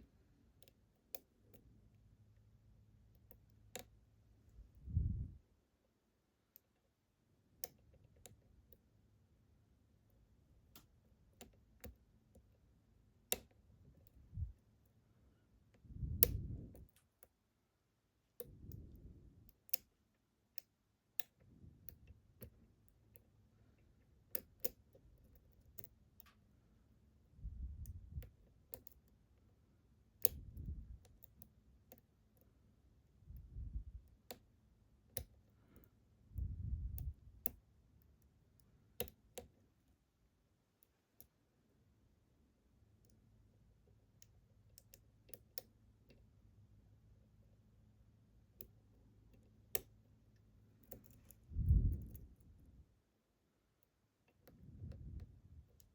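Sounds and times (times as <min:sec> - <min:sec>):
dull rumbles of lock handling: 0:50.8 - 0:52.8.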